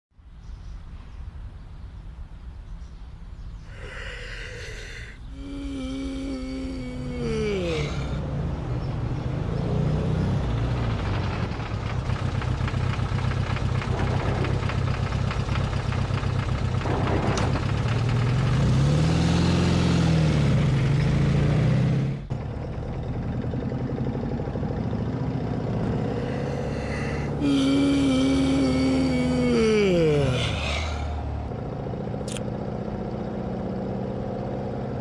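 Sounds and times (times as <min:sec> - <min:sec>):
low engine-like hum: 0:00.2 - 0:19.0, 0:21.9 - 0:35.0
person yawning: 0:03.7 - 0:08.2, 0:26.0 - 0:31.3.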